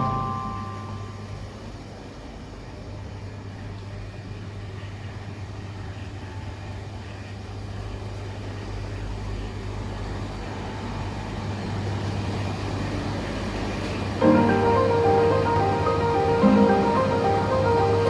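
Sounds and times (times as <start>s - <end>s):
low mechanical hum: 0.0s - 18.0s
rushing noise: 14.2s - 18.0s.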